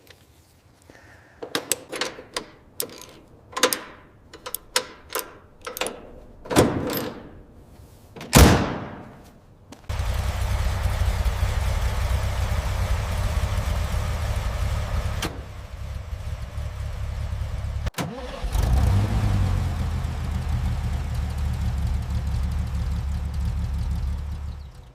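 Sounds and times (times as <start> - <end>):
car engine running: 9.9 - 24.9.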